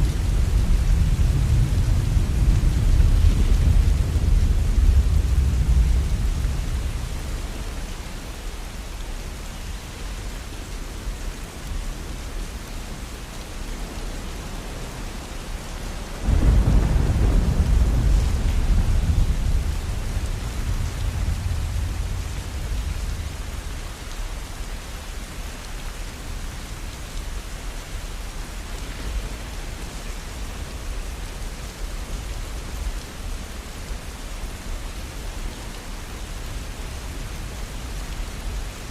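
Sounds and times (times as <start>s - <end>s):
deep thunder rumble: 0.0s - 7.3s, 16.2s - 23.7s
steady rainfall: 0.0s - 38.9s.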